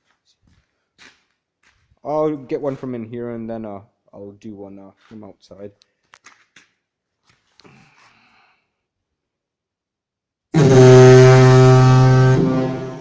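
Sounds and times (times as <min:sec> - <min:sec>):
loud low air horn blast: 0:10.6 - 0:13.0.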